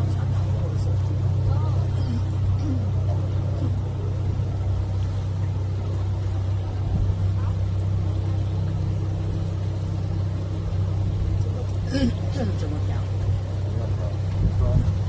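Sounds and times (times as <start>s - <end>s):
boat engine humming: 0.0s - 15.0s
water washing: 0.0s - 15.0s.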